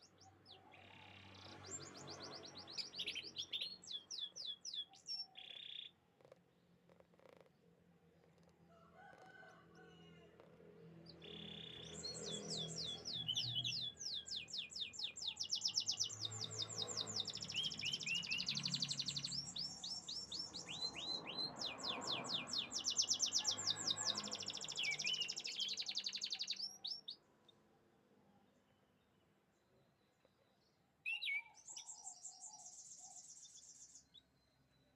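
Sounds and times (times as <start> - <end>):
canary singing trills: 11.1 - 27.2.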